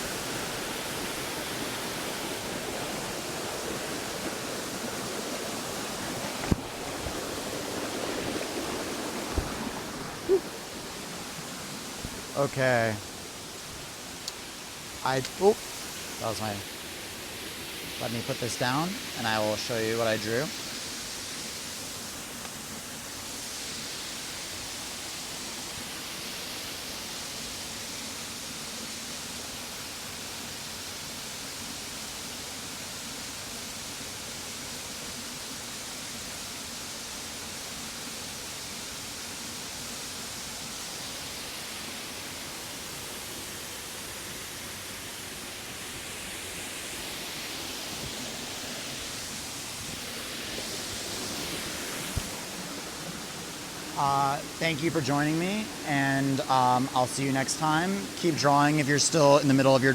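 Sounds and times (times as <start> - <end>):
waterfall roaring: 0.0 - 59.9.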